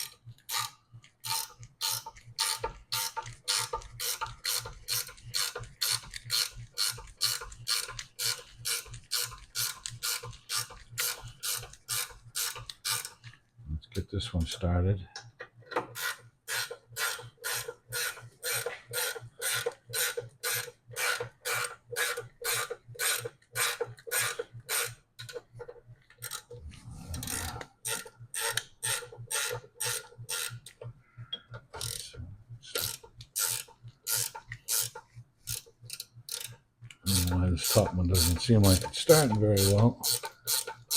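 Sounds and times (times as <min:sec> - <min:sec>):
ratcheting wrench clicking: 0:00.0 - 0:13.3, 0:26.2 - 0:26.5, 0:27.2 - 0:30.8, 0:31.7 - 0:32.1, 0:32.7 - 0:40.9.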